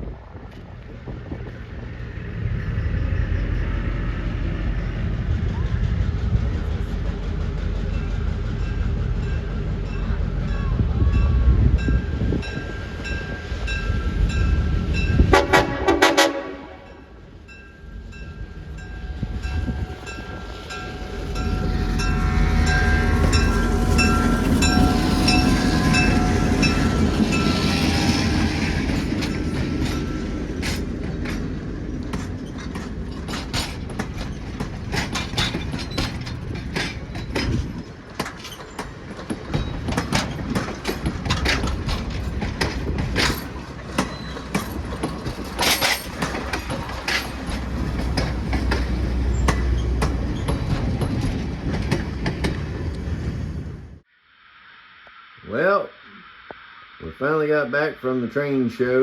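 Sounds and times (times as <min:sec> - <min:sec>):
train running: 0:00.0 - 0:54.1
train horn: 0:15.2 - 0:17.1, 0:18.9 - 0:28.4.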